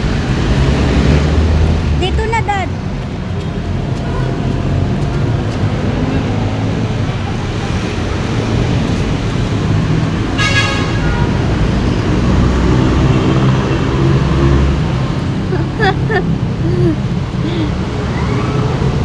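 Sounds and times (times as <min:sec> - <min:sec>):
road noise: 0:00.0 - 0:19.0
vehicle engine running: 0:00.0 - 0:19.0
short horn toot: 0:10.4 - 0:11.3.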